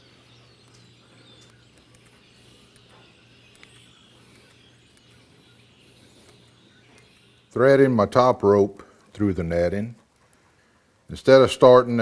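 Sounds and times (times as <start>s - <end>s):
faint bird chirps: 0.0s - 8.0s
faint low hum: 0.0s - 12.0s.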